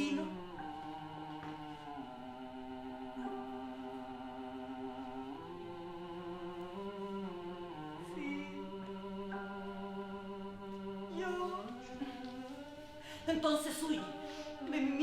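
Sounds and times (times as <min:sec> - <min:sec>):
choir singing sustained chords: 0:00.0 - 0:15.0.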